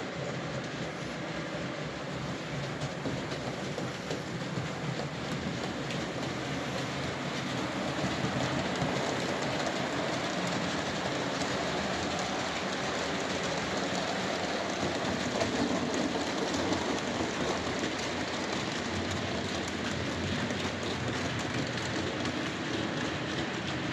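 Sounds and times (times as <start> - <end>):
model train rumbling: 0.0 - 23.9
wheels clicking on rails: 0.0 - 23.9.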